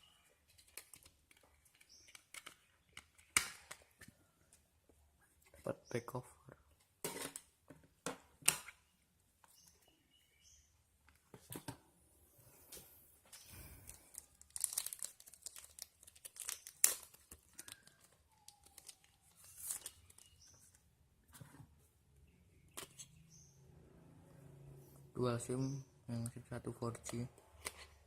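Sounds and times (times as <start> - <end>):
plastic wrapping crinkling: 13.8 - 20.5.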